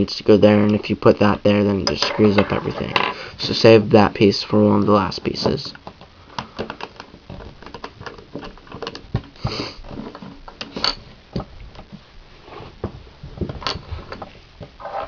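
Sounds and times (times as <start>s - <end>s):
short hiss: 9.4s - 9.8s.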